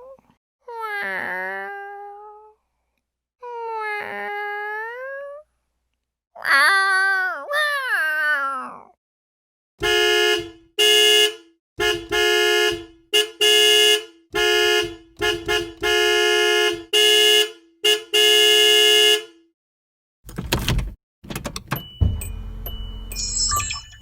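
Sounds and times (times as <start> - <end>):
car horn honking: 9.8 - 19.4, 21.8 - 24.0.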